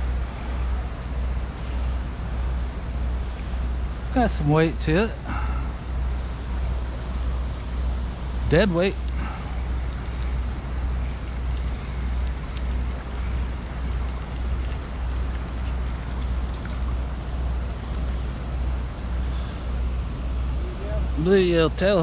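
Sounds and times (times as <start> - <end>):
low pulsing rumble: 0.0 - 4.2, 5.2 - 21.2
water pouring over spillway: 9.8 - 18.4.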